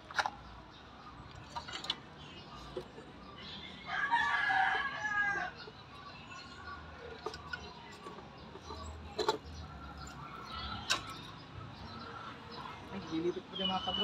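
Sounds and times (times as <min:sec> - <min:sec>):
rooster crowing: 0:03.9 - 0:05.6.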